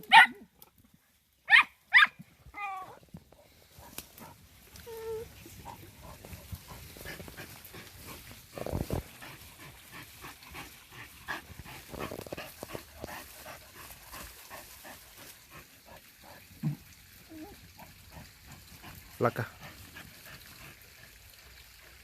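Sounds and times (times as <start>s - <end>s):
dog whining: 2.0s - 3.0s, 4.8s - 5.4s
dog panting: 5.4s - 16.5s, 17.8s - 22.0s.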